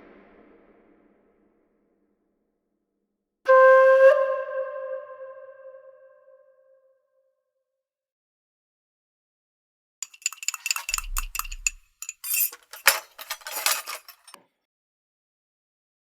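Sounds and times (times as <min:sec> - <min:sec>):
hard objects clinking and clattering: 0:10.0 - 0:14.4.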